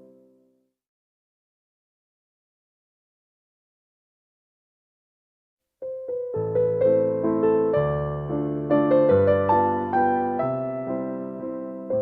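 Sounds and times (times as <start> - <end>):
slow piano melody: 5.8 - 12.0.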